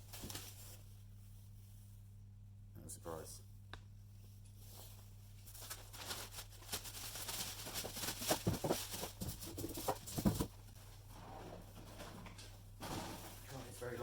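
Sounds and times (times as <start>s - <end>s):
low steady hum: 0.0s - 14.0s
packaging rustling and scraping: 5.4s - 13.8s.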